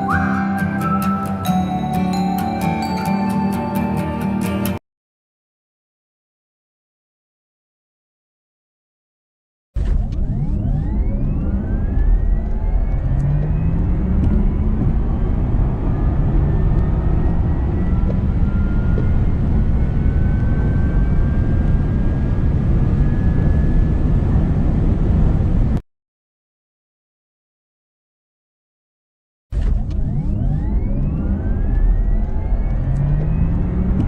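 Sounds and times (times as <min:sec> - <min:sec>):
road and wind noise: 0:09.8 - 0:25.8, 0:29.6 - 0:34.0.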